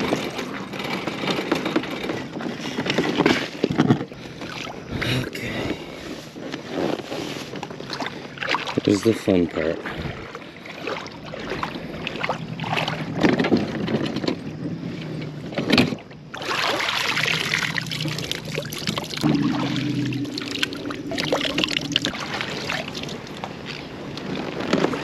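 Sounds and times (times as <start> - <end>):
water sloshing against kayak: 0.0 - 25.0
low hum: 9.7 - 25.0.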